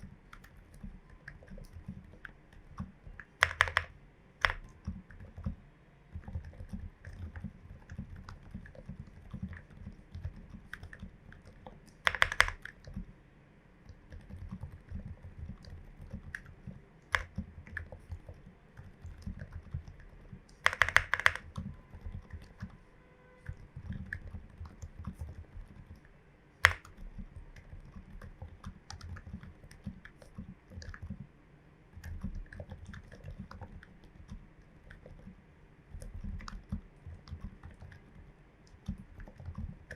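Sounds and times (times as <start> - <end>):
mechanical keyboard typing: 0.0 - 13.1, 13.9 - 22.8, 23.5 - 31.2, 32.0 - 39.9
sharp keyboard clacks: 0.0 - 13.1, 14.0 - 22.8, 23.5 - 26.0, 26.6 - 31.2.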